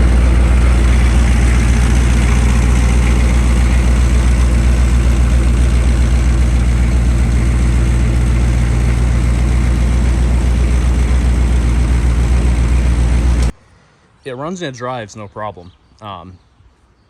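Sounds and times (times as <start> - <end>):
diesel engine idling: 0.0 - 13.5.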